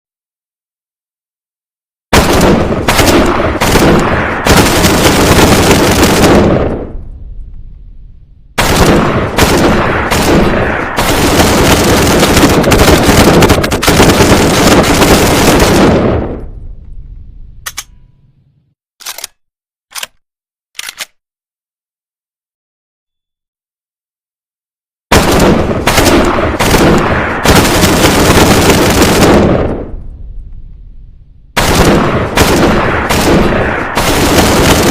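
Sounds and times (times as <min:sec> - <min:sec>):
submachine gun automatic bursts: 0:02.3 - 0:06.3, 0:08.6 - 0:15.8, 0:25.2 - 0:29.4, 0:31.6 - 0:34.9.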